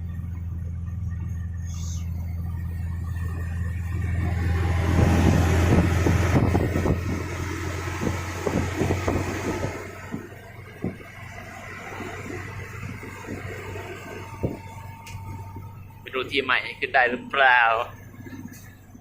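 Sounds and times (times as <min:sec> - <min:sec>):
knocks and rattles of bumpy ride: 0:00.0 - 0:19.0
vehicle engine droning: 0:00.0 - 0:19.0.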